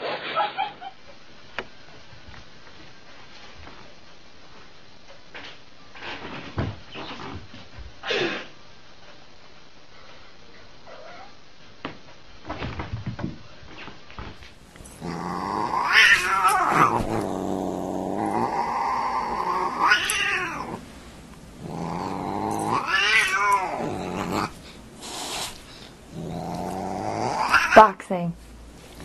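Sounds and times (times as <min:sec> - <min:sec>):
cat yowling: 0:15.0 - 0:20.8, 0:21.6 - 0:24.5, 0:26.3 - 0:27.9.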